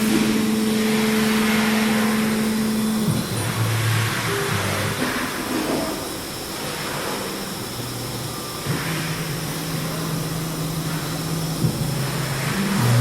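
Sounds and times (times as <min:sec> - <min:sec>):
low motor hum: 0:00.0 - 0:05.0, 0:08.0 - 0:13.0.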